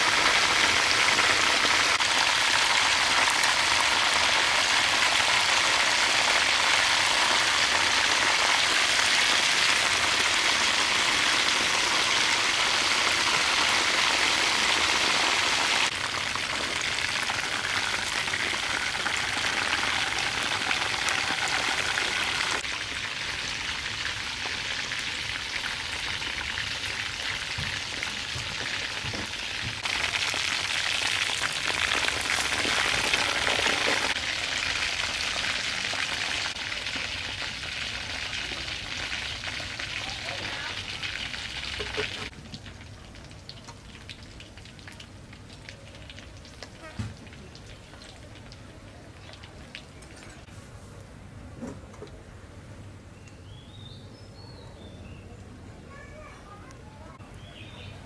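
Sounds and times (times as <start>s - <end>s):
food sizzling in a pan: 0.0s - 42.3s.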